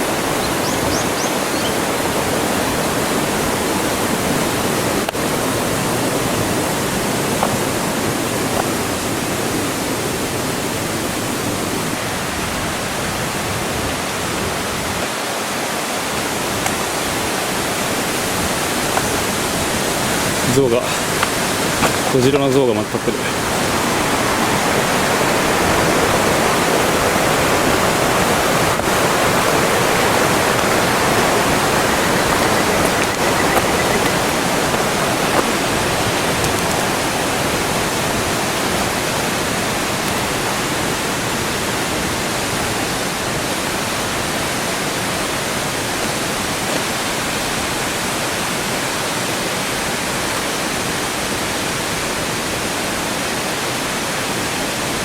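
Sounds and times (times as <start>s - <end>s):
flowing water rushing: 0.0s - 55.0s.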